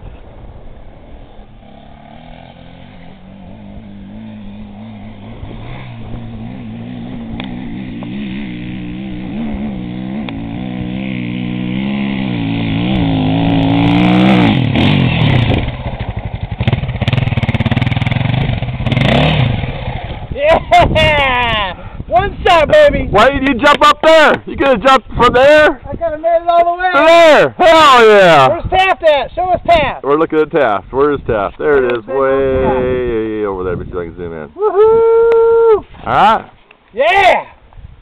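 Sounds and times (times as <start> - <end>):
dirt bike engine revving: 0.8 - 20.4.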